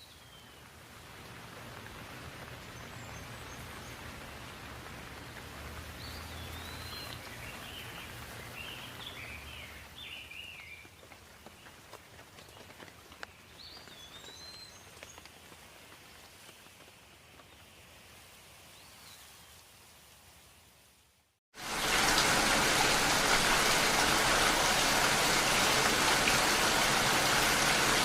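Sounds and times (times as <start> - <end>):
light rain with drips: 0.0 - 28.0
small birds chirping: 6.0 - 18.0.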